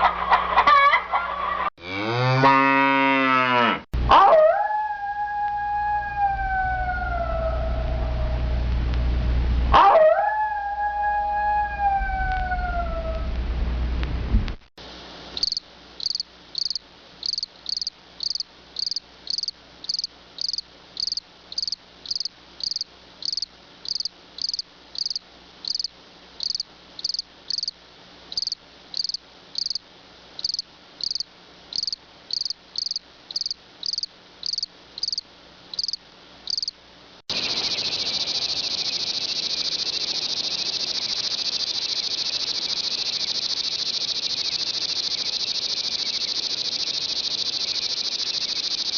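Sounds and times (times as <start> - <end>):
continuous high cricket trill: 15.3 - 48.9
cricket chirping: 15.4 - 29.8, 30.4 - 48.9.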